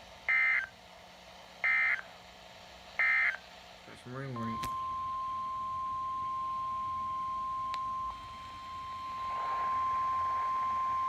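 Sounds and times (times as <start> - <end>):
steady alarm tone: 0.3 - 0.7, 1.6 - 2.1, 3.0 - 3.4, 4.8 - 11.0.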